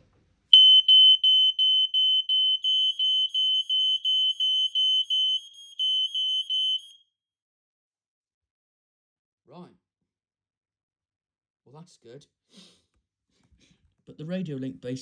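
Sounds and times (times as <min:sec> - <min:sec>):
smoke alarm beeping: 0:00.6 - 0:07.0.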